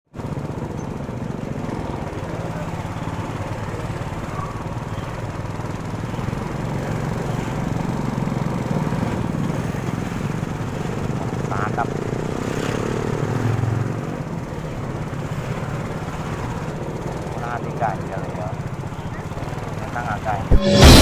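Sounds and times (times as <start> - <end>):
engine running: 0.1 - 21.0.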